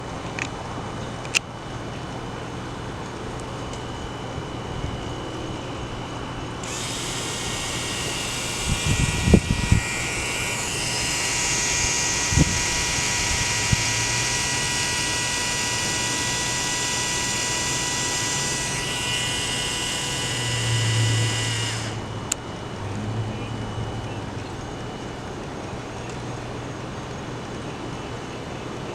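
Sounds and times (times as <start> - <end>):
small electric motor whine: 3.6 - 26.4.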